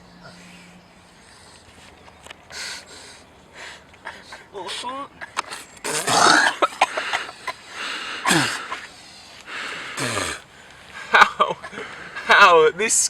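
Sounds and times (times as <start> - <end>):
man grunting and gasping: 5.8 - 6.6, 8.2 - 8.7, 9.9 - 10.4.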